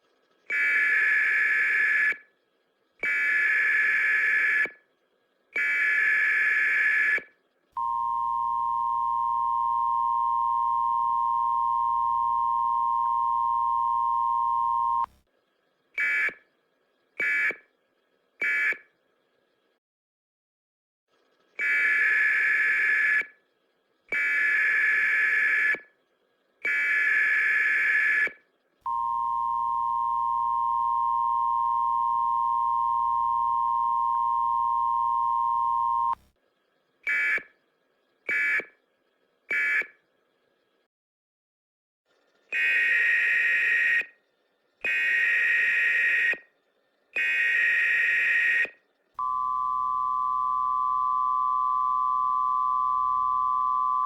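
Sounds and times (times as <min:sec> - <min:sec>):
two-tone attention signal: 0:49.2 - 0:54.0.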